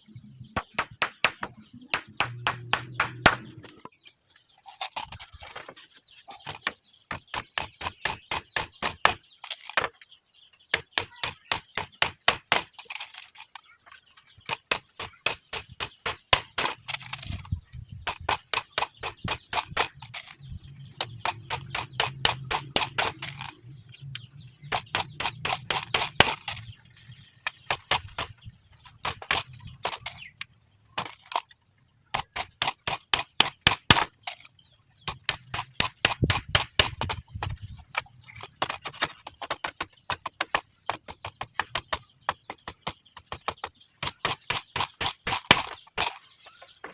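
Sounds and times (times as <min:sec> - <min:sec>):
hammer striking wood: 0:00.6 - 0:03.7, 0:21.0 - 0:23.5, 0:32.2 - 0:34.2, 0:38.4 - 0:46.1.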